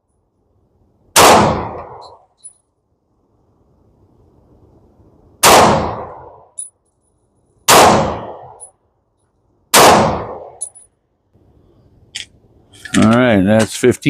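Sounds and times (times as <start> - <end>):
pistol shots ringing: 1.2 - 2.2, 7.7 - 8.6, 9.7 - 10.6.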